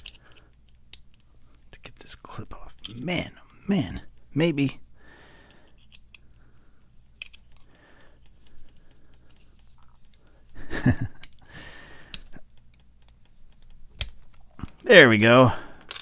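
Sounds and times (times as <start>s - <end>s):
person breathing: 0.0s - 0.6s, 4.9s - 7.0s, 7.6s - 10.8s, 11.4s - 12.4s
tools clicking in padlock: 7.1s - 7.7s.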